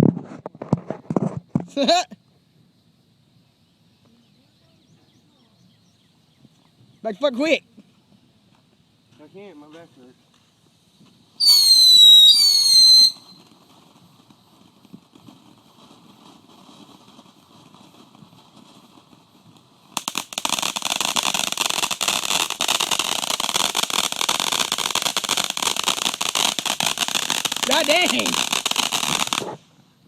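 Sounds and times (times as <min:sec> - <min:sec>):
fountain firework crackling hiss: 0:07.1 - 0:30.0
firework falling whistle: 0:11.4 - 0:13.5.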